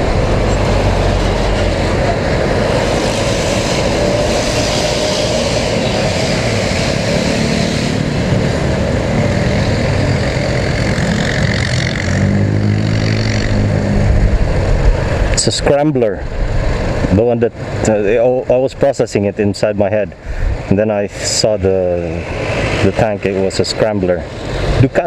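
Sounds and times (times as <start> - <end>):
motorcycle engine: 0.0 - 15.6
road and wind noise: 0.0 - 25.0.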